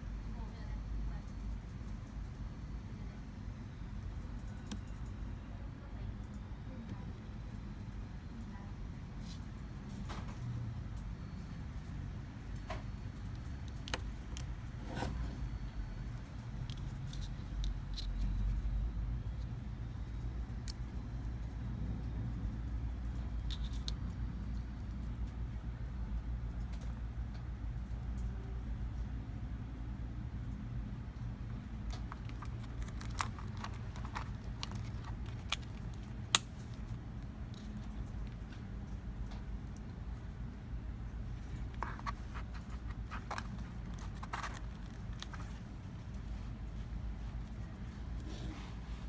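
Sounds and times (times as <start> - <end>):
steady low hum: 0.0 - 49.0
screwdriver set clicks and taps: 31.9 - 36.5.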